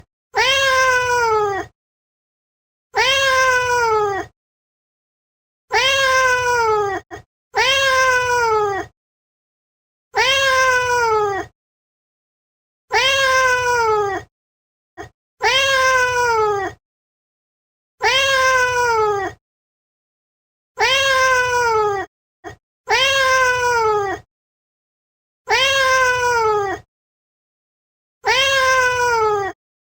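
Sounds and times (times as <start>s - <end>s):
cat meowing: 0.4s - 1.7s, 3.0s - 4.3s, 5.7s - 8.9s, 10.2s - 11.5s, 12.9s - 14.3s, 15.0s - 16.8s, 18.0s - 19.4s, 20.8s - 24.3s, 25.5s - 26.9s, 28.2s - 29.6s.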